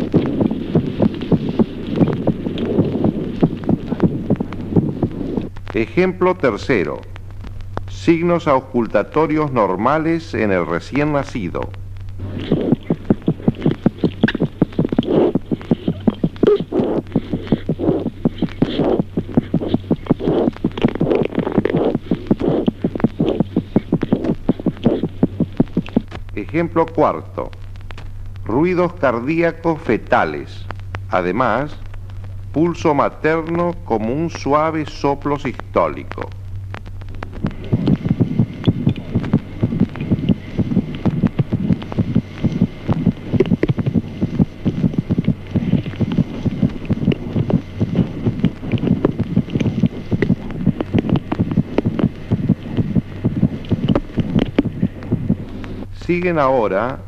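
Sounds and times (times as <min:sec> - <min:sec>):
rushing noise: 0:00.0 - 0:07.0, 0:37.0 - 0:55.8
soft whooshing pulse: 0:00.0 - 0:07.3, 0:07.9 - 0:27.6, 0:31.7 - 0:55.9
rapid heartbeat through stethoscope: 0:00.0 - 0:28.5, 0:35.3 - 0:55.9
steady low hum: 0:00.0 - 0:57.0.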